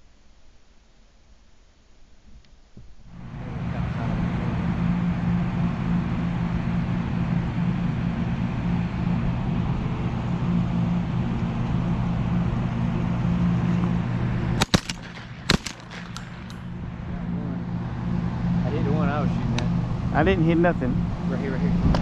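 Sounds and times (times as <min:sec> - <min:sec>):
shotgun blasts: 0:14.6 - 0:16.7
wind rumble on microphone: 0:20.9 - 0:22.0.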